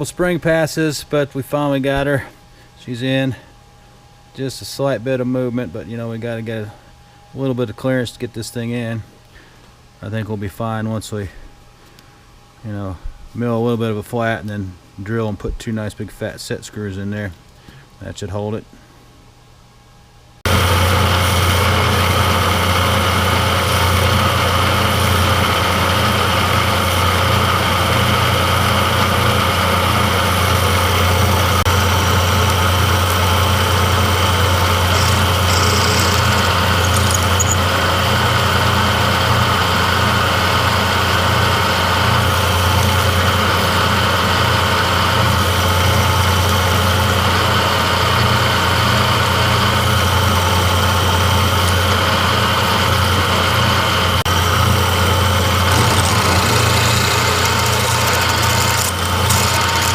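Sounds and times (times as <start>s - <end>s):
machine tool humming: 20.5s - 59.9s.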